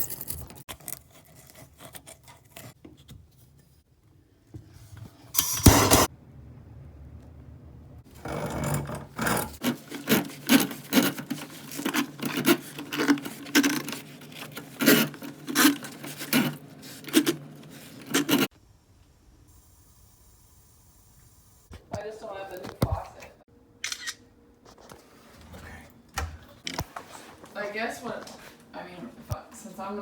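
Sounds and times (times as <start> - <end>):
hand tool rasping strokes: 8.2 - 18.5.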